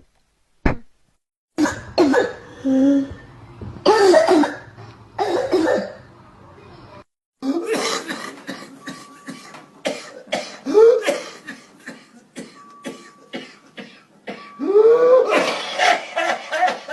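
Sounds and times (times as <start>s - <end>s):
rapid coughing: 7.4s - 14.6s.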